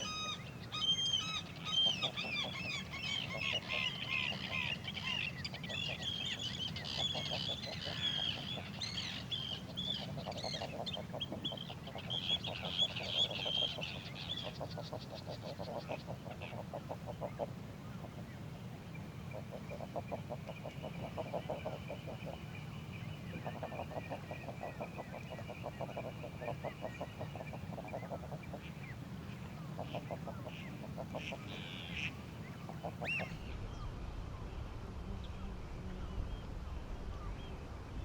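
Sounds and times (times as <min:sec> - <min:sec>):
waterfowl rattling calls: 0:00.0 - 0:17.5, 0:29.8 - 0:33.4
steady low rush: 0:32.2 - 0:38.0.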